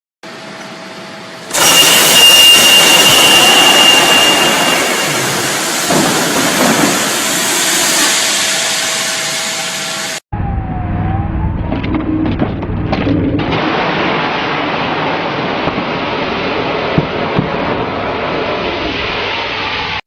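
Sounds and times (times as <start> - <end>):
high whistle: 1.5 - 6.0
loud rush of gas: 1.5 - 10.2.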